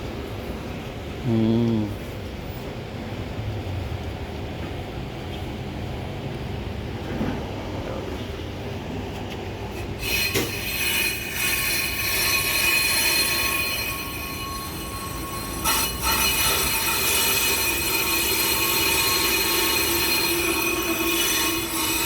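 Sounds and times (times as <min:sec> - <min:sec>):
brake lathe metallic squeal: 0:09.9 - 0:22.0.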